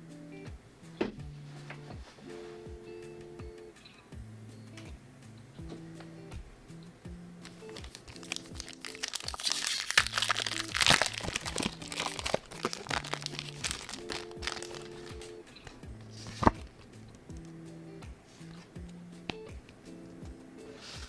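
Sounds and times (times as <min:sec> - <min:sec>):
background music: 0:00.0 - 0:21.0
foil wrapper crinkling and tearing: 0:07.4 - 0:15.3.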